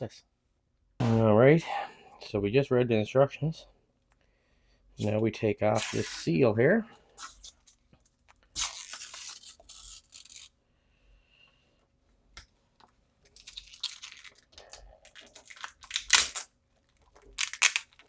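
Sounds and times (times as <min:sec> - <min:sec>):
sealing strip tearing off: 0:05.8 - 0:06.2, 0:08.6 - 0:10.5, 0:13.4 - 0:16.5, 0:17.1 - 0:18.0
packaging crinkling: 0:08.6 - 0:10.5, 0:13.3 - 0:18.0.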